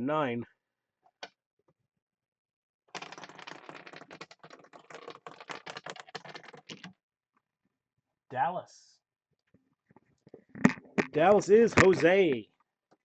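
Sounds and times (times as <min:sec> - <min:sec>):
disc clattering against pegs: 0:10.6 - 0:12.3.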